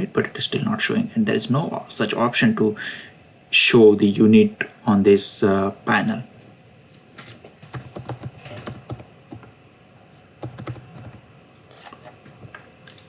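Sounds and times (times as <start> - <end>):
typing on computer keyboard: 7.7 - 9.5, 10.4 - 11.2.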